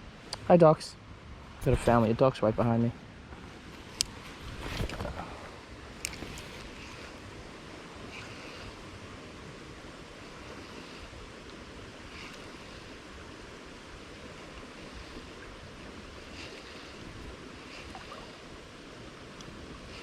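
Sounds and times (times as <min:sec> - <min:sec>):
creek water flowing: 0:00.0 - 0:20.0
wind rumble on microphone: 0:01.2 - 0:20.0.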